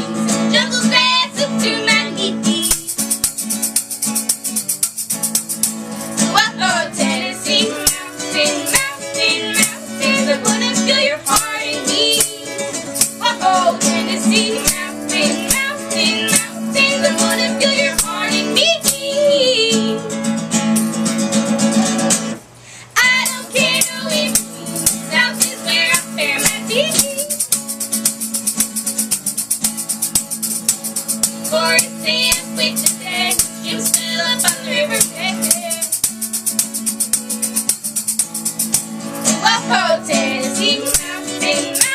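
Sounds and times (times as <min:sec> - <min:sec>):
strummed acoustic guitar: 0:00.0 - 0:41.9
women singing: 0:00.3 - 0:03.2, 0:06.2 - 0:20.1, 0:23.0 - 0:27.4, 0:31.4 - 0:36.0, 0:39.3 - 0:41.9
shaker keeping time: 0:01.1 - 0:20.0, 0:23.0 - 0:41.9.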